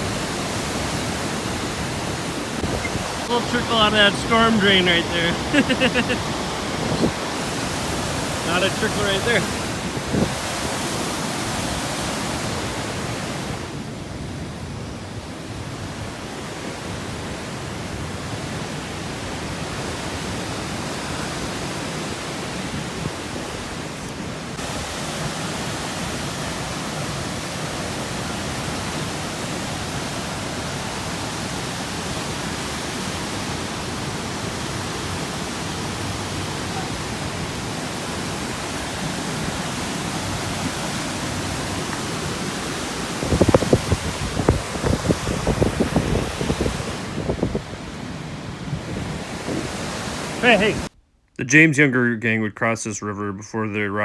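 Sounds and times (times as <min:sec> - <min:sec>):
floodwater rushing from drain: 0:00.0 - 0:13.6.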